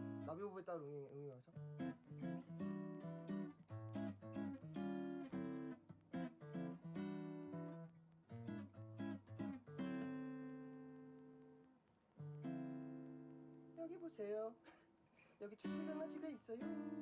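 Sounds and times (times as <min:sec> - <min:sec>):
acoustic guitar strumming: 0:00.0 - 0:00.3, 0:01.6 - 0:11.6, 0:15.6 - 0:17.0.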